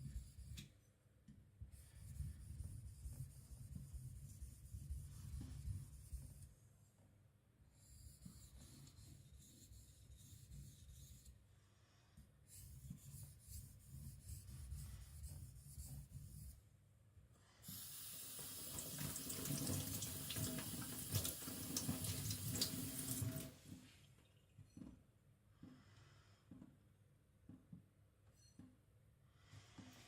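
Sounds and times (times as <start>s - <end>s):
water running from tap: 17.7s - 23.6s.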